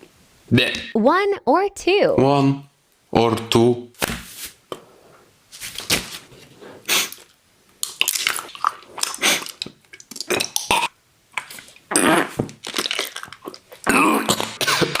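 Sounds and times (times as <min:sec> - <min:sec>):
person eating mouth sounds: 0:06.9 - 0:15.0.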